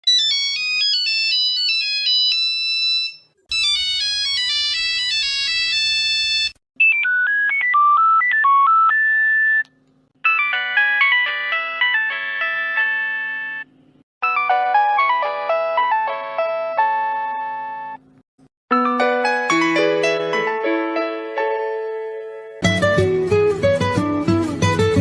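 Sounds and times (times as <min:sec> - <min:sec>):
phone ringtone melodies: 0:00.0 - 0:09.6, 0:10.2 - 0:18.0, 0:18.7 - 0:20.9.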